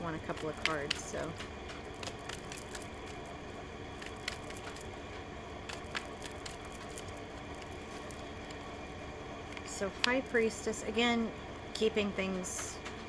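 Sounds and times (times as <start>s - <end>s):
light flicks and taps: 0.0s - 8.9s, 9.5s - 10.5s
cards being shuffled: 0.0s - 10.6s
steady background hum: 0.0s - 13.0s.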